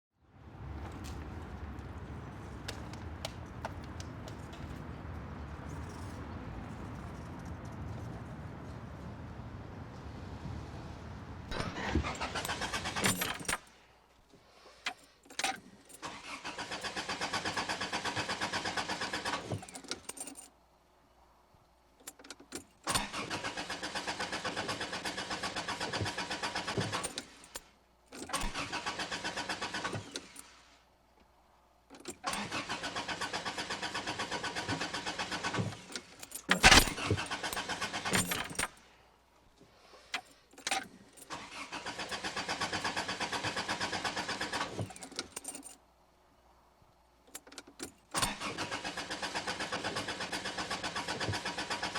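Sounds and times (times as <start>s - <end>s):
car starter cranking engine: 11.5s - 13.7s, 15.9s - 20.1s, 22.8s - 27.5s, 28.2s - 30.6s, 32.1s - 38.8s, 41.2s - 45.6s, 48.0s - 51.9s.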